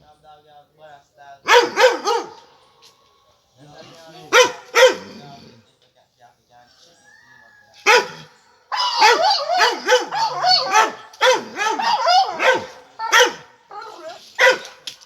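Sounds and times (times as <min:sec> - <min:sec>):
dog barking: 0:01.4 - 0:02.4, 0:04.3 - 0:05.2, 0:07.8 - 0:14.8.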